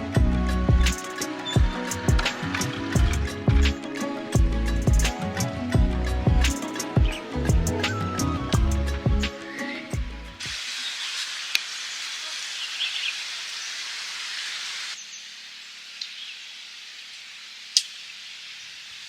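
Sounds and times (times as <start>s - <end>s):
high steady hiss: 0.0s - 19.0s
bird chirp: 6.0s - 10.0s, 12.5s - 13.8s, 15.0s - 15.4s, 16.0s - 16.7s.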